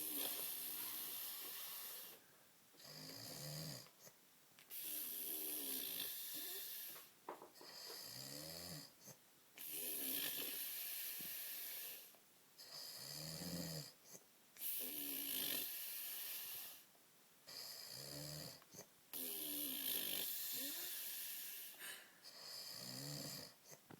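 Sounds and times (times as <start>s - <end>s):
man snoring: 0.0s - 2.2s, 2.8s - 3.9s, 4.8s - 7.0s, 7.7s - 8.9s, 9.6s - 12.0s, 12.7s - 14.0s, 14.7s - 16.8s, 17.5s - 18.6s, 19.2s - 21.8s, 22.4s - 23.6s
hissing breath: 20.4s - 22.2s.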